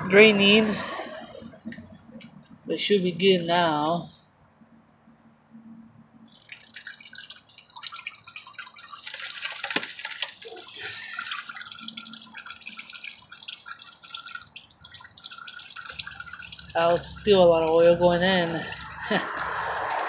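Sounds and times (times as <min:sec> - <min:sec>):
oil splashing and dripping: 0:06.2 - 0:20.0.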